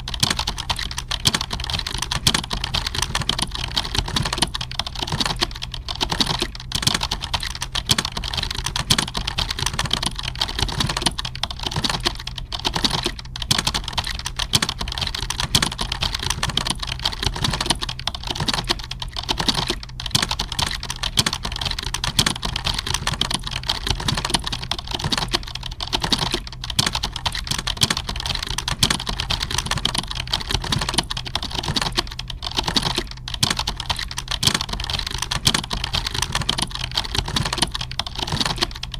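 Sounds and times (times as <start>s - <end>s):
keyboard typing: 0.0s - 38.9s.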